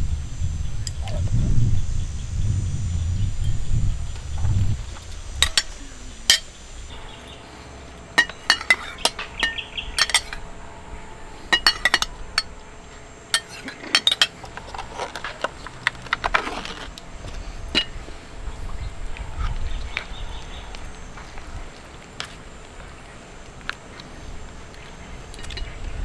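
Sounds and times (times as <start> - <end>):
dishes and utensils clinking: 3.4 - 20.5.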